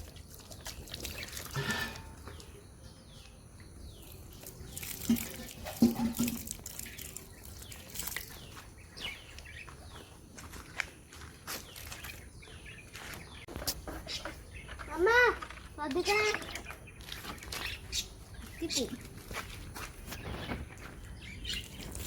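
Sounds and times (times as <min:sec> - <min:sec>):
water pouring onto soil: 0:00.0 - 0:02.5, 0:04.0 - 0:08.6, 0:21.6 - 0:22.0
birds chirping: 0:00.0 - 0:22.0.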